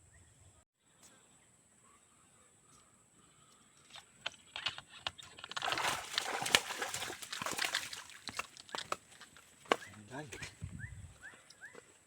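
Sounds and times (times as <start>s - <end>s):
water splashing and sloshing: 5.3s - 9.7s
sharp water slaps: 5.5s - 9.1s.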